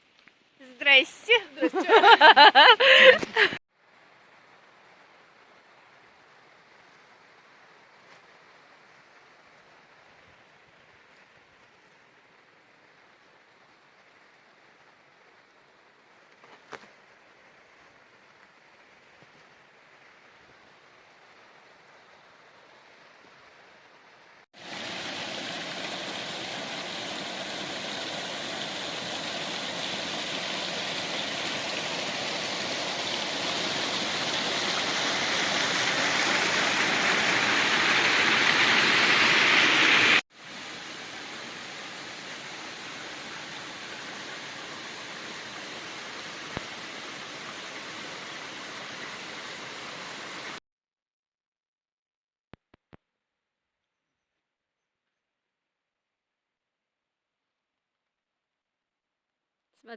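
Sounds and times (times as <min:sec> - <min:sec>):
water rushing in a gorge: 0:24.6 - 0:50.6.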